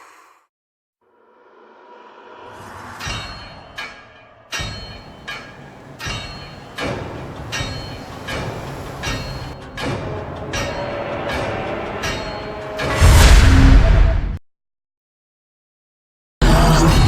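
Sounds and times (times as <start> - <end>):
dark cinematic music: 4.7 - 14.2.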